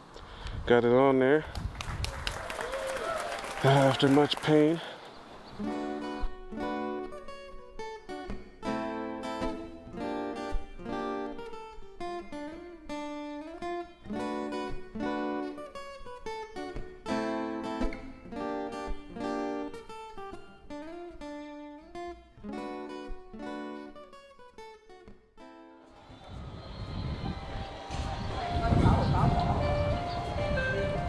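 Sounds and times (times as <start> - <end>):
acoustic guitar picked and strummed: 5.4 - 26.0.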